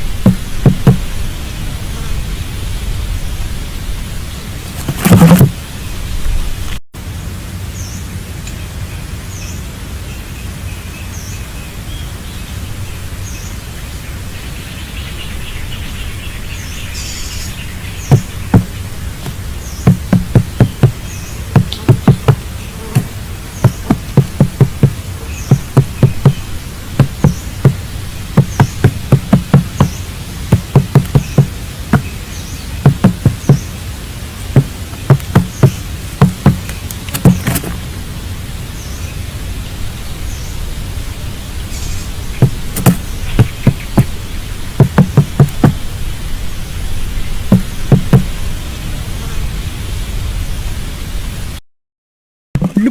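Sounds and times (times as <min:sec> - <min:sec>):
sharp knocks: 0:00.0 - 0:01.1, 0:04.7 - 0:05.6, 0:18.1 - 0:32.2, 0:32.8 - 0:33.7, 0:34.6 - 0:37.9, 0:42.4 - 0:44.2, 0:44.8 - 0:45.8, 0:47.5 - 0:48.3, 0:52.6 - 0:52.9.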